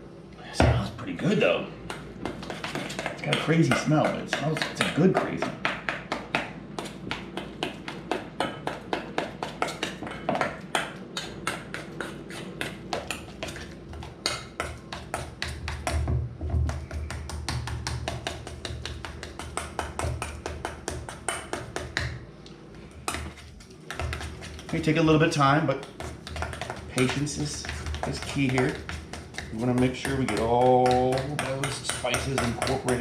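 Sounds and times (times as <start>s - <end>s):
utensil scraping against bowl: 23.0s - 33.0s.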